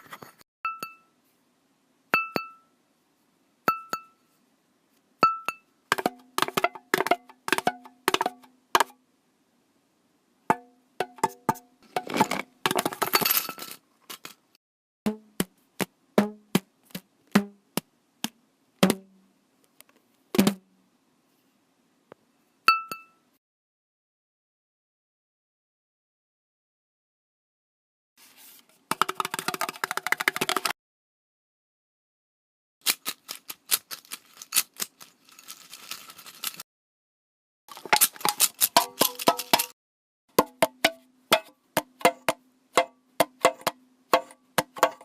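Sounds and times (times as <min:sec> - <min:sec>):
ringing dings: 0:00.7 - 0:01.1, 0:02.2 - 0:02.7, 0:03.7 - 0:04.2, 0:05.2 - 0:05.7, 0:22.7 - 0:23.2
small hard objects clicking: 0:28.9 - 0:30.7, 0:32.8 - 0:36.6, 0:37.7 - 0:39.8.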